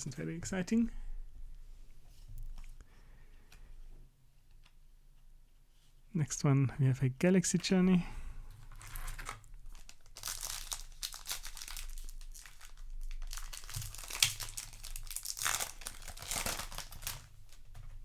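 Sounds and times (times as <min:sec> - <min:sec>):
foil wrapper crinkling: 0:08.7 - 0:17.6.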